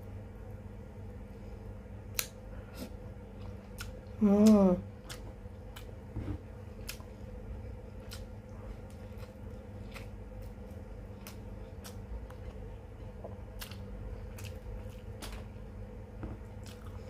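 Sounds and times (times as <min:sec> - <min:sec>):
steady low hum: 0:00.0 - 0:17.0
chewing and lip smacks: 0:03.4 - 0:04.2, 0:05.0 - 0:06.0, 0:06.8 - 0:07.1, 0:07.9 - 0:15.5, 0:16.6 - 0:17.0.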